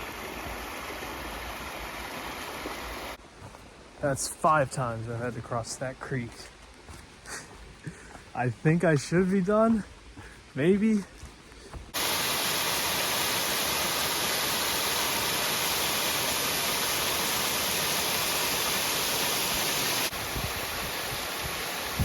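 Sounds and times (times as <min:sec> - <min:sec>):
water rushing down cascade: 0:00.0 - 0:03.2, 0:11.9 - 0:22.0.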